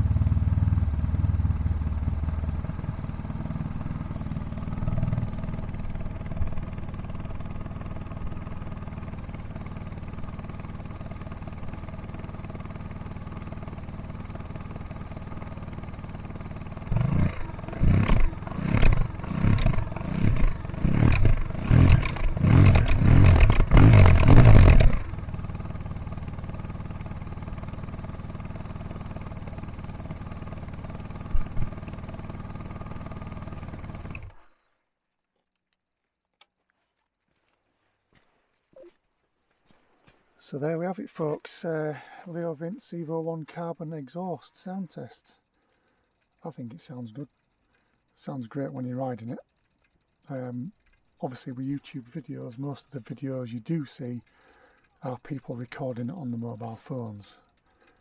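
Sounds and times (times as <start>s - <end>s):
motorcycle engine idling and revving: 0.0s - 34.8s, 41.6s - 58.0s.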